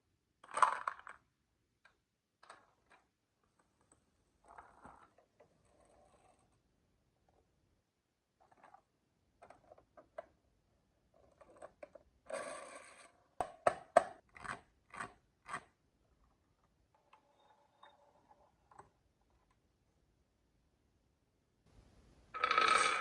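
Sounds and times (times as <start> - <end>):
marbles clacking down wooden run: 22.4 - 23.0.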